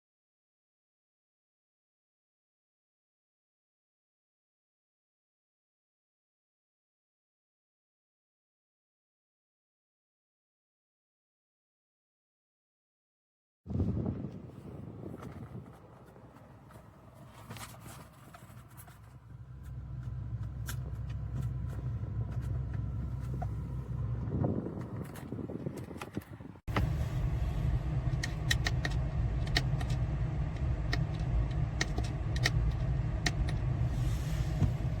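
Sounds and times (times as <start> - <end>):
vehicle low rumble: 13.7 - 35.0.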